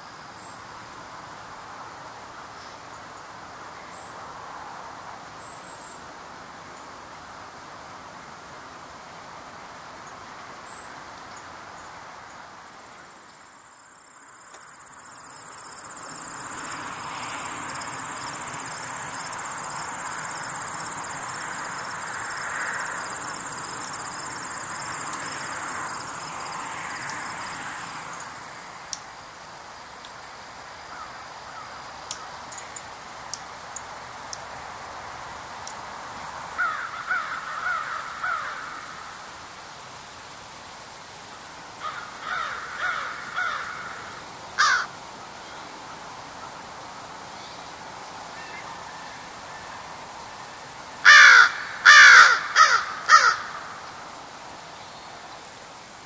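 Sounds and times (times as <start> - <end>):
crow cawing: 36.6 - 39.0, 41.8 - 44.9, 51.0 - 53.8.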